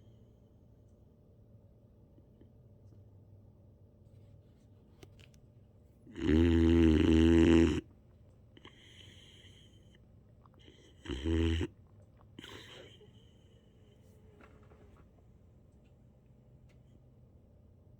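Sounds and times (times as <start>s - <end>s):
puppy snoring: 6.1s - 7.9s, 10.6s - 13.7s.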